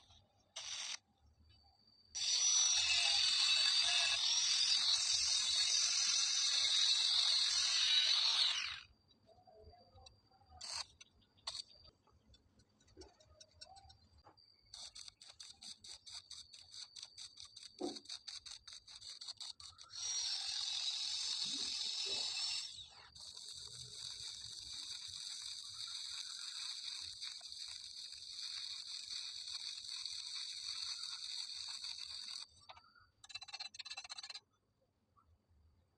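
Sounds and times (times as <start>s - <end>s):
rapid ticks: 9.9s - 34.6s
welding arc crackling hiss: 21.2s - 22.7s, 23.3s - 32.4s.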